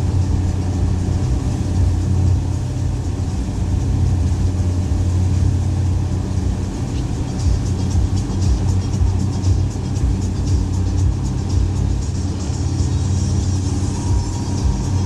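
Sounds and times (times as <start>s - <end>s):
outboard engine droning: 0.0s - 15.0s
high ticking: 5.8s - 15.0s.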